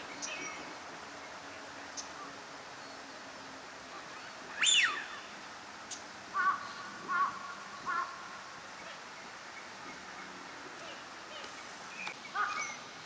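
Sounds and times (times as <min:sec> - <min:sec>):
bird calls: 0:00.0 - 0:00.7, 0:04.0 - 0:13.0.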